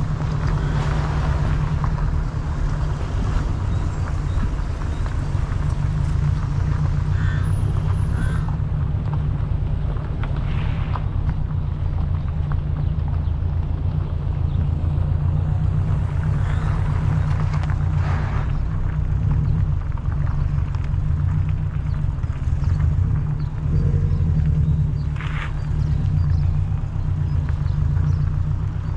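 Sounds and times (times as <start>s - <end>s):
steady low rumble: 0.0s - 28.9s.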